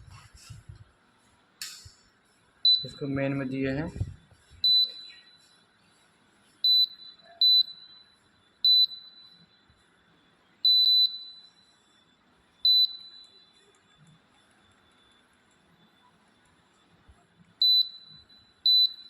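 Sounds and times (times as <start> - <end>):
longer beep: 2.7 - 3.6, 4.6 - 5.6, 6.7 - 9.7, 10.7 - 11.8, 12.7 - 13.8, 17.6 - 19.0
short high beeps: 4.6 - 5.6, 6.6 - 9.7.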